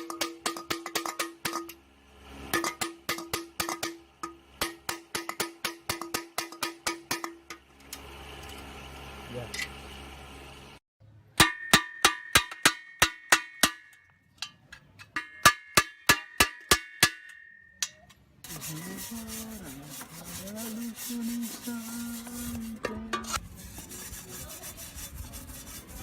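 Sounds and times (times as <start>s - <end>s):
rasping scraping noise: 18.4s - 26.0s.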